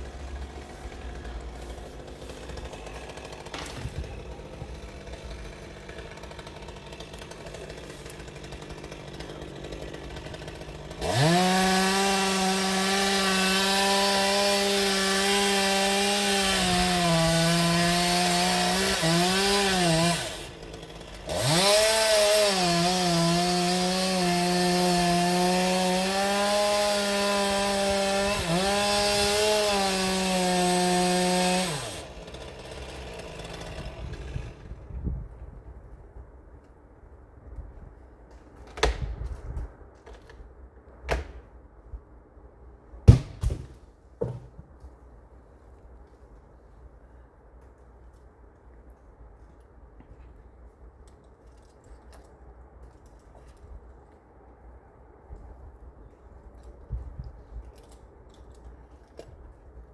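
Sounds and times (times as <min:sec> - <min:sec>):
chainsaw at full throttle: 0:00.0 - 0:35.0.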